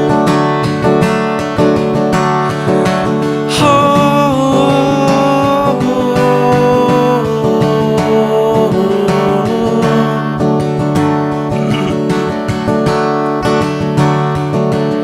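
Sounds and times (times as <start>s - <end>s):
acoustic guitar strumming: 0.0s - 15.0s.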